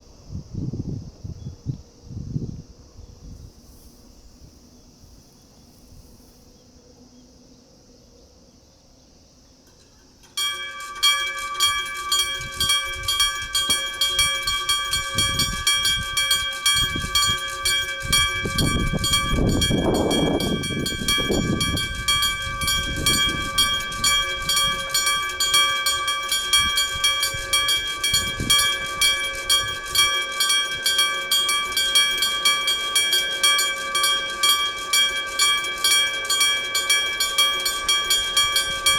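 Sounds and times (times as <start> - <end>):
wheels clattering over rails: 9.7 - 38.9
freight train rumbling: 10.4 - 38.9
level-crossing bell ringing: 10.4 - 38.9.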